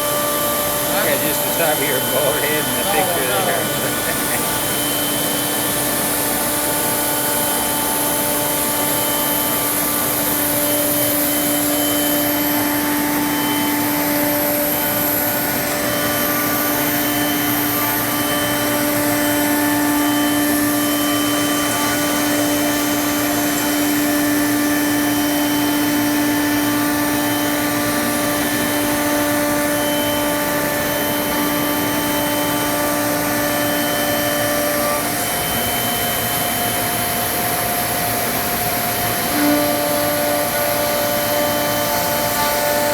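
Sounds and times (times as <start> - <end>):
router spindle whine: 0.0 - 42.9
faint cutting tones: 0.9 - 5.0.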